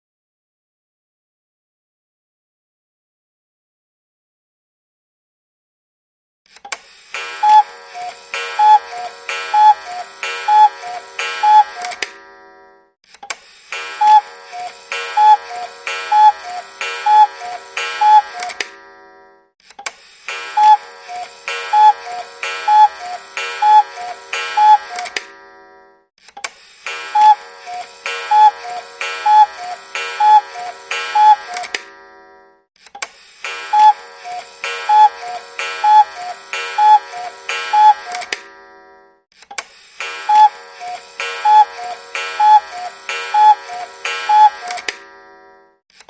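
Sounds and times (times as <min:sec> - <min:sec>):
cuckoo clock click: 0:06.6 - 0:12.2, 0:13.2 - 0:18.8, 0:19.8 - 0:25.3, 0:26.4 - 0:31.9, 0:33.0 - 0:38.5, 0:39.4 - 0:45.0
cuckoo clock call: 0:07.2 - 0:12.2, 0:13.7 - 0:18.8, 0:20.3 - 0:25.8, 0:26.9 - 0:32.4, 0:33.4 - 0:38.5, 0:39.6 - 0:45.6.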